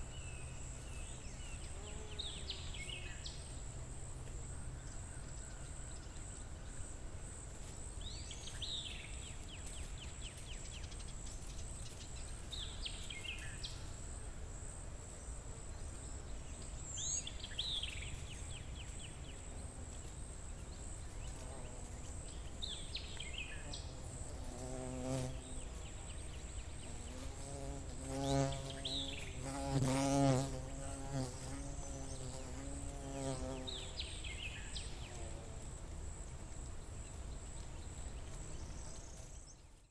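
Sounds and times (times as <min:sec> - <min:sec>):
fly buzzing: 0:26.9 - 0:33.9.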